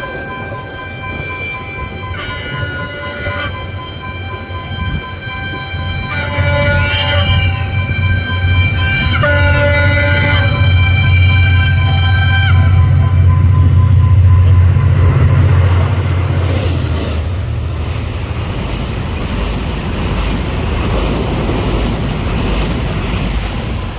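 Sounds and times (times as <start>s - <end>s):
locomotive horn: 0.0s - 17.4s
locomotive engine drone: 0.0s - 23.9s.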